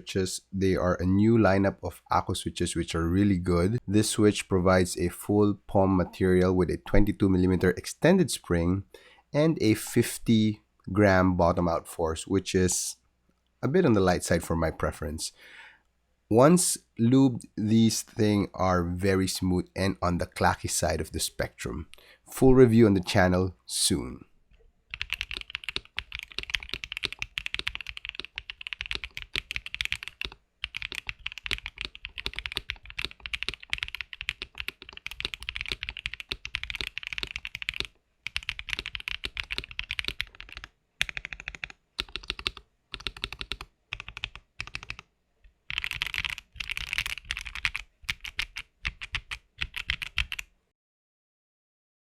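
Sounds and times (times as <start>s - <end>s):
typing on mechanical keyboard: 24.9s - 45.1s, 45.7s - 50.5s.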